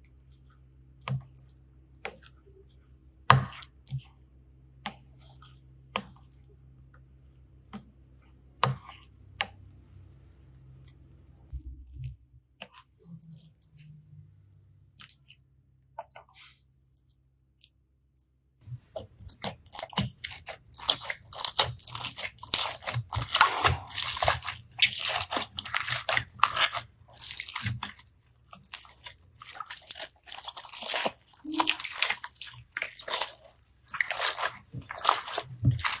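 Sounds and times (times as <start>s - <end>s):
slime crackling and squishing: 18.6s - 36.0s.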